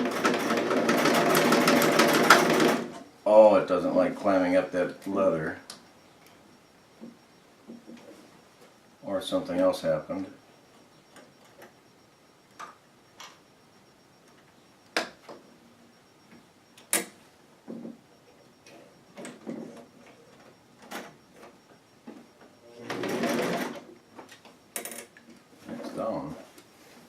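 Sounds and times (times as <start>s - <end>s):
sewing machine stitching fast: 0.0s - 3.0s, 22.9s - 23.8s.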